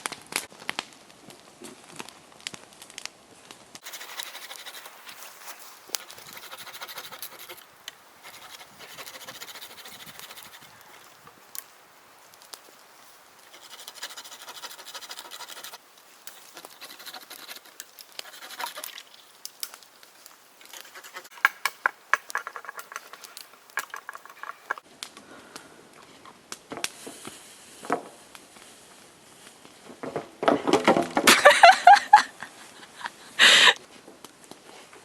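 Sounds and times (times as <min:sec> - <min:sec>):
wood scraping and rustling: 0:03.8 - 0:11.6, 0:12.3 - 0:24.8
sharp wooden knocks and clicks: 0:20.6 - 0:24.8.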